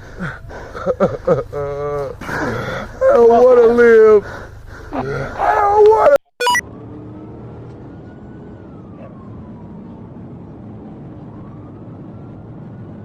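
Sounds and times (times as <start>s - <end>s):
vehicle engine and road noise: 0.0s - 13.0s
police siren wailing: 5.5s - 13.0s.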